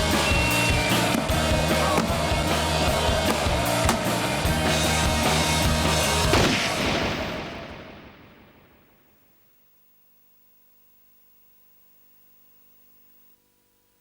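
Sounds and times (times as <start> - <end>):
heavy percussive hit: 1.1 - 5.1.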